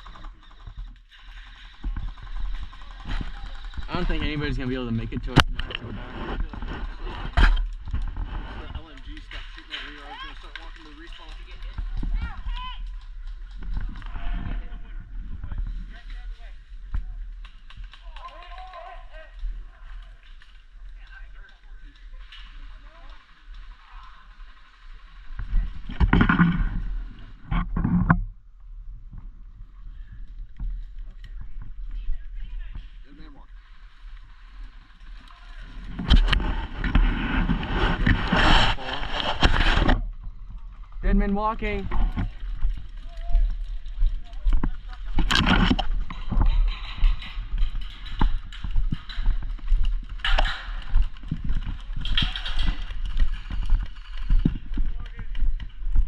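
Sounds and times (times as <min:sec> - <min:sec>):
footsteps walking: 0:41.7 - 0:56.0.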